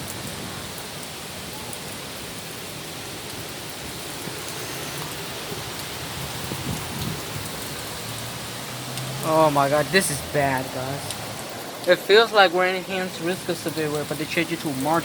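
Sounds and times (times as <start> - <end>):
heavy rain pouring: 0.0 - 15.0
raindrop ticks: 1.7 - 15.0.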